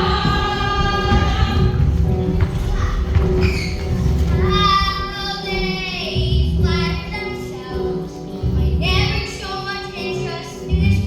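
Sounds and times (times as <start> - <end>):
children singing: 0.0 - 11.0.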